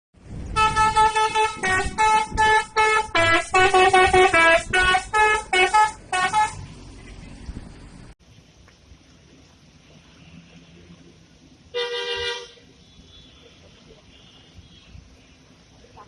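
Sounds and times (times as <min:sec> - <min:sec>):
multi-tone air horn tune: 0:00.5 - 0:06.7, 0:11.7 - 0:13.5.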